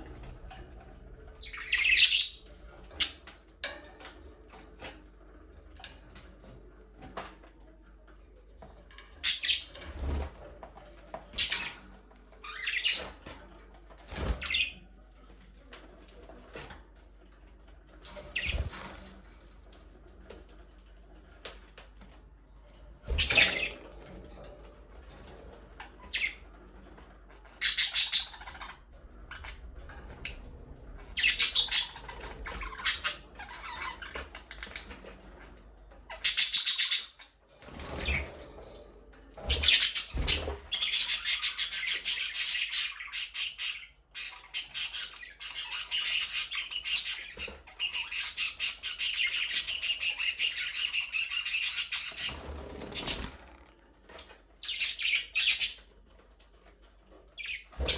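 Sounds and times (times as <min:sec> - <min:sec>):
budgerigars chirping: 0:01.4 - 0:03.2, 0:27.6 - 0:28.8, 0:31.2 - 0:34.8, 0:36.2 - 0:37.3, 0:39.5 - 0:53.4, 0:54.6 - 0:55.8.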